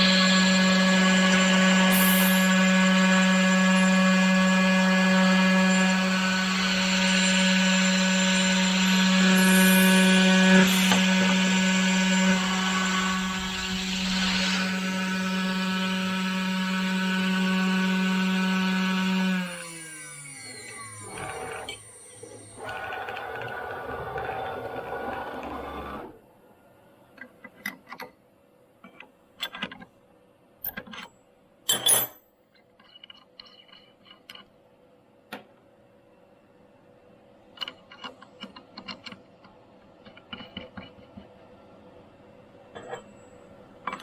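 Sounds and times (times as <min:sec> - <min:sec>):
steady machine noise: 0:00.0 - 0:16.2
machine spindle winding down: 0:00.0 - 0:26.2
clicks and clinks: 0:31.7 - 0:34.5.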